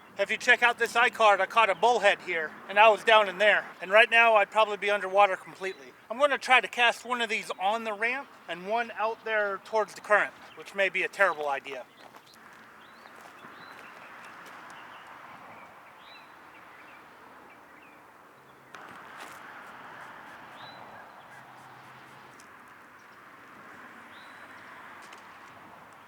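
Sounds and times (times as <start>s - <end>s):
creek water rushing: 18.8s - 22.5s.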